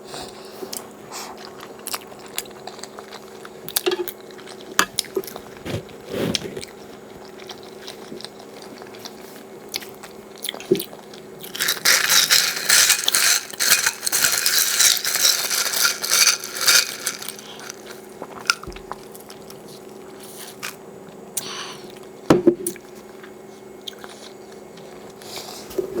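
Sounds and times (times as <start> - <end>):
close-miked chewing and biting: 0.6 - 20.8
loud crunching: 11.4 - 18.7.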